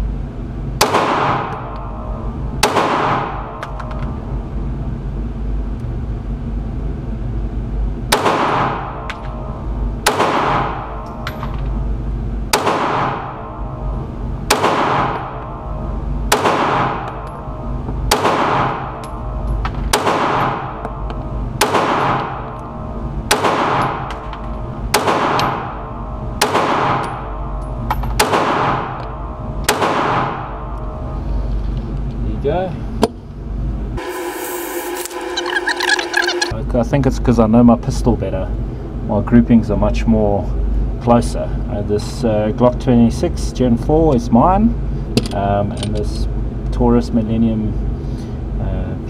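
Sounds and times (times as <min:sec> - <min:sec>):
pistol shots: 0:00.8 - 0:01.8, 0:02.6 - 0:03.8, 0:08.1 - 0:09.4, 0:10.0 - 0:11.0, 0:12.5 - 0:13.5, 0:14.5 - 0:15.5, 0:16.3 - 0:17.3, 0:18.1 - 0:19.1, 0:19.8 - 0:22.6, 0:23.2 - 0:27.4, 0:28.1 - 0:30.7.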